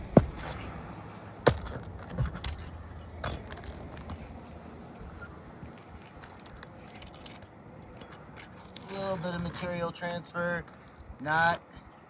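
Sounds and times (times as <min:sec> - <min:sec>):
sharp knocks and metallic clinks: 0:01.4 - 0:04.3.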